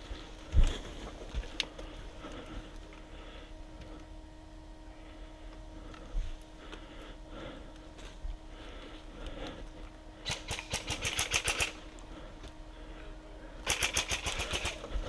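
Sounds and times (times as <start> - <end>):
airsoft rifle firing bursts: 10.2 - 11.8, 13.6 - 14.8.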